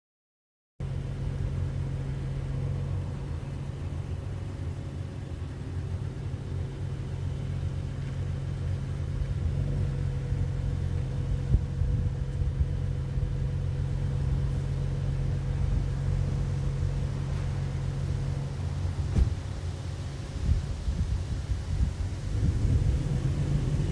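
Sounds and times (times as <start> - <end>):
car engine idling: 0.8 - 23.9
short knock: 19.1 - 19.4.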